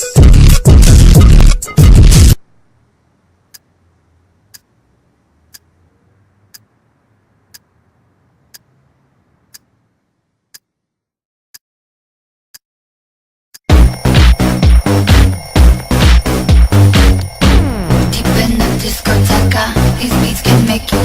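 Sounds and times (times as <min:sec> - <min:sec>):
faint low hum: 0:02.4 - 0:10.6
alarm clock ticking: 0:13.6 - 0:20.6.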